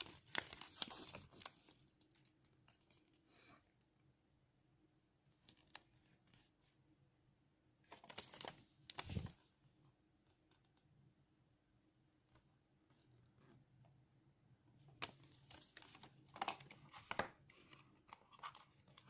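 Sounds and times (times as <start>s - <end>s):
packaging rustling: 0.0s - 3.1s, 15.0s - 19.0s.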